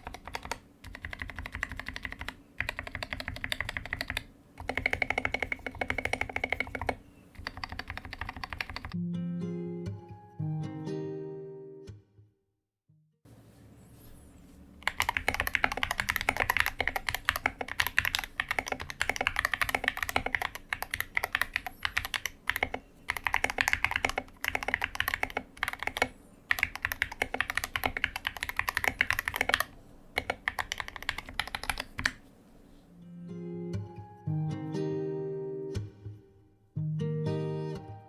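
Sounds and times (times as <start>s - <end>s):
mechanical keyboard typing: 0.0s - 9.0s, 14.8s - 32.2s.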